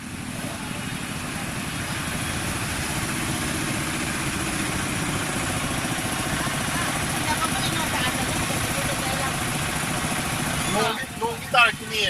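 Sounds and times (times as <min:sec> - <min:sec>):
vehicle engine running: 0:00.0 - 0:12.0.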